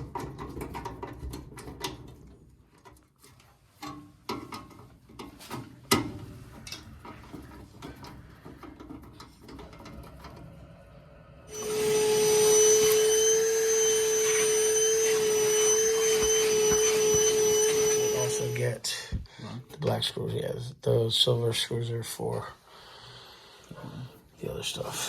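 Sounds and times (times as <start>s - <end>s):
vacuum cleaner whining: 11.0s - 18.8s.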